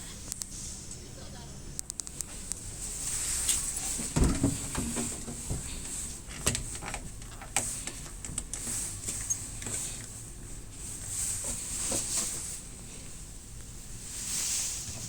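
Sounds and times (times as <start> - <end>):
refrigerator knocks and clunks: 4.0 - 5.7.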